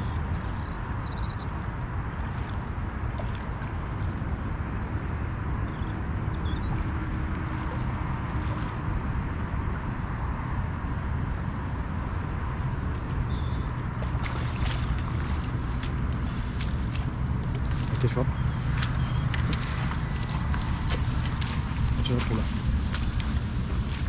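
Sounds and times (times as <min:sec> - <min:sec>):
low rumbling noise: 0:00.0 - 0:24.0
bird chirps: 0:17.3 - 0:22.4.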